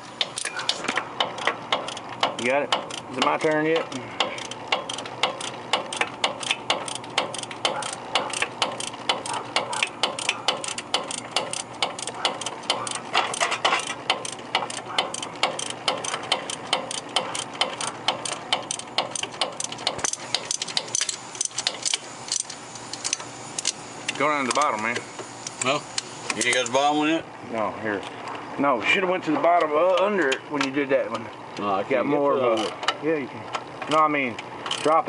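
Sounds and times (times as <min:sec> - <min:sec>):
socket ratchet clicking: 0:00.2 - 0:26.8, 0:34.6 - 0:35.0.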